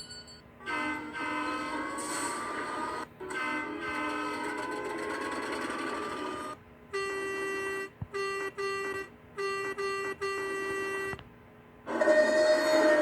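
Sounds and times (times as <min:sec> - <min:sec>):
train horn blast: 0:03.2 - 0:04.4.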